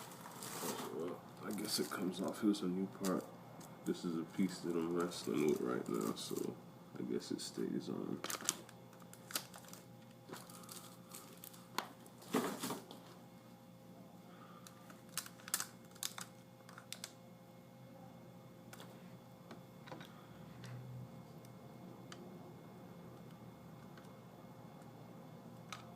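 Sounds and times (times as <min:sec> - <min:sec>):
plastic scrape: 0:00.0 - 0:01.0.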